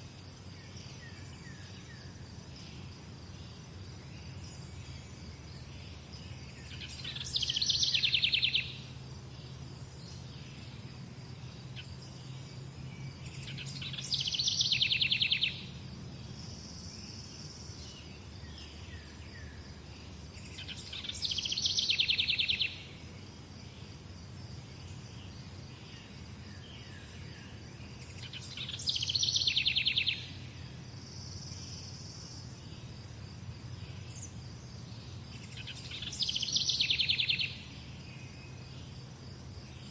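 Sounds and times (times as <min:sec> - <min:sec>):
background hiss: 0:00.0 - 0:39.9
songbird trilling: 0:06.6 - 0:08.9, 0:13.3 - 0:15.8, 0:20.6 - 0:22.9, 0:28.1 - 0:30.4, 0:35.4 - 0:37.7.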